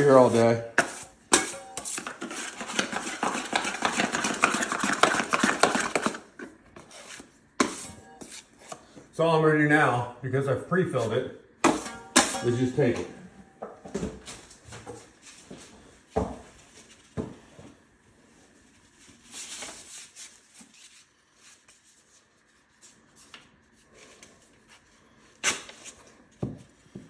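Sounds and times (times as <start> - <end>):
drywall knife scraping: 0.2 - 6.2, 6.8 - 8.9.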